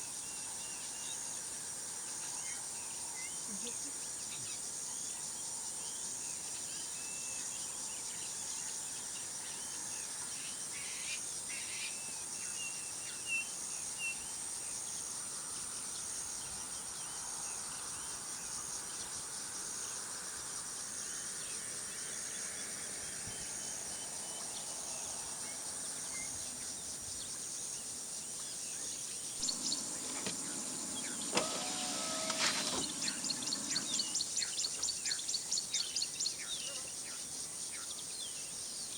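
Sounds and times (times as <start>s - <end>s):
mechanical whirring noise: 29.4s - 34.6s.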